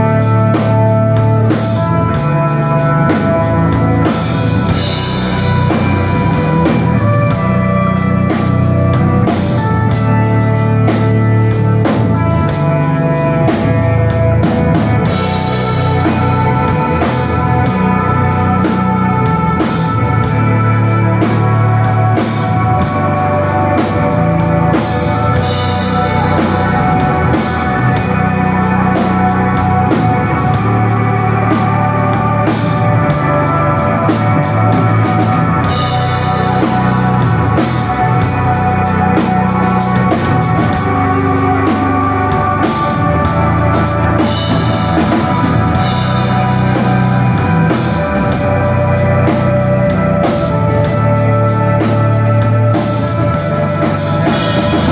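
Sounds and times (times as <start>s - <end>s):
bass guitar: 0.0s - 54.9s
drum kit beat: 0.0s - 54.9s
electric guitar sustained notes: 0.0s - 54.9s.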